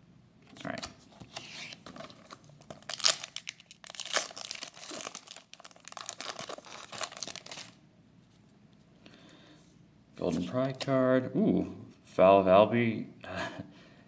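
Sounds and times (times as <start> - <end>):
foil wrapper tearing and crinkling: 2.2 - 7.8.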